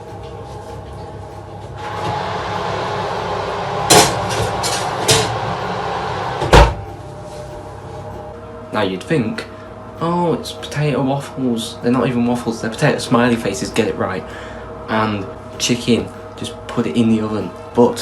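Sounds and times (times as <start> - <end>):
steady whirring: 1.7 - 7.0
oven door banging shut: 6.4 - 6.8.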